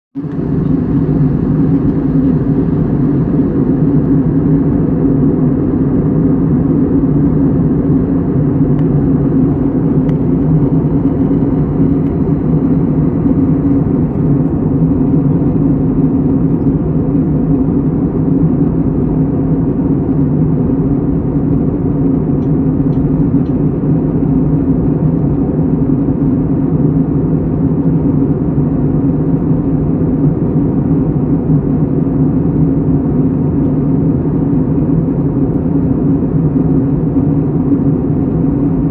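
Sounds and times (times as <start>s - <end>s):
deep hum: 0.2s - 19.2s
steady low rumbling noise: 0.2s - 38.9s.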